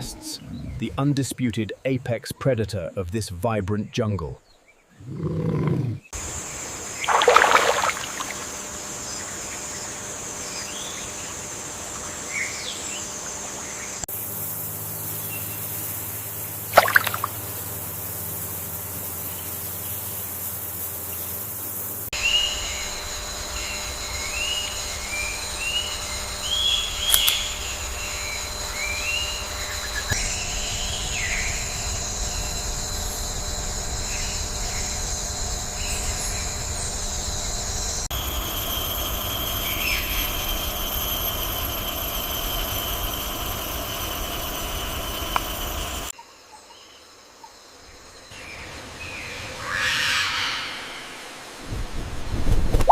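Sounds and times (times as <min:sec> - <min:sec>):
high insect drone: 0:06.1 - 0:51.6
rushing water hiss: 0:06.2 - 0:08.7, 0:15.2 - 0:20.9
bird calls: 0:24.4 - 0:31.6.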